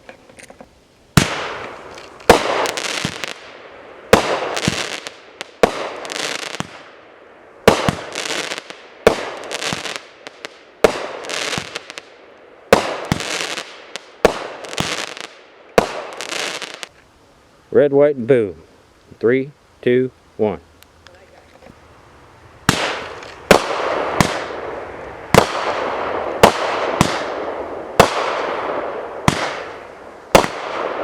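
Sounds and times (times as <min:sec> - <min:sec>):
firework bang with crackle: 0:01.2 - 0:06.9, 0:07.6 - 0:12.1, 0:12.7 - 0:16.9, 0:22.6 - 0:31.0.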